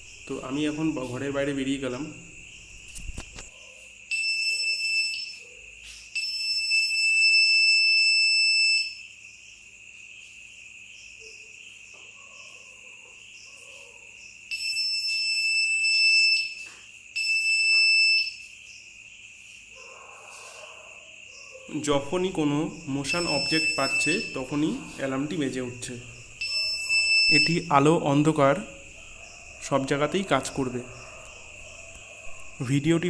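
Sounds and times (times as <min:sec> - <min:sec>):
crickets chirring: 0:00.0 - 0:33.0
high-pitched alarm tone: 0:04.1 - 0:05.4, 0:06.2 - 0:09.0, 0:14.5 - 0:18.5, 0:21.7 - 0:31.6.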